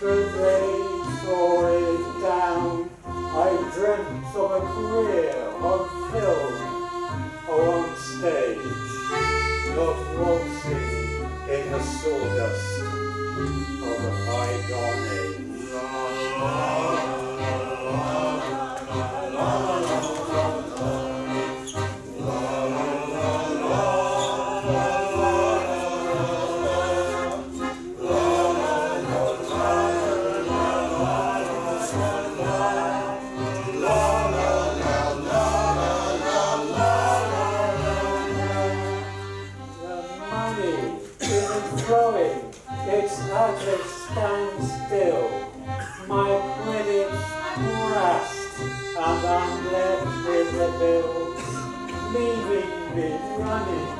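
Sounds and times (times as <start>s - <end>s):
accordion chords: 0.0s - 53.9s
voices singing together: 13.4s - 41.9s.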